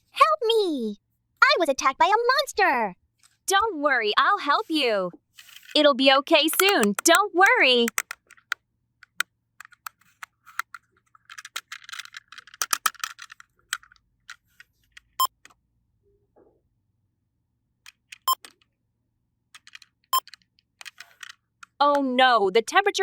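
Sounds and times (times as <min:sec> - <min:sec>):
plastic toy pieces clattering: 0:06.4 - 0:15.2, 0:19.5 - 0:21.8.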